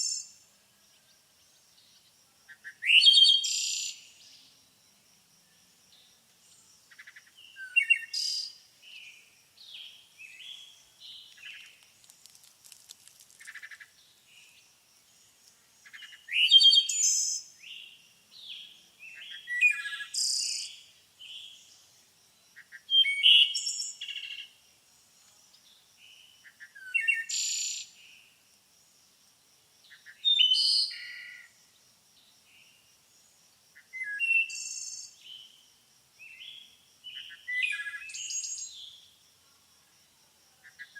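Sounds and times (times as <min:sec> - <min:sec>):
songbirds chirping and trilling: 0:00.0 - 0:11.9, 0:13.2 - 0:28.3.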